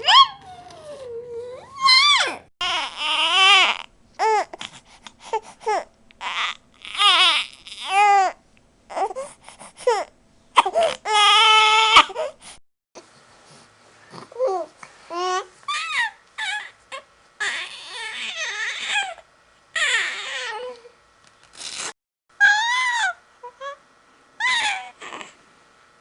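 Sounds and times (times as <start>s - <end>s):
baby crying: 0.1s - 4.6s, 5.7s - 12.4s, 14.4s - 19.2s, 19.8s - 20.9s, 24.4s - 25.3s.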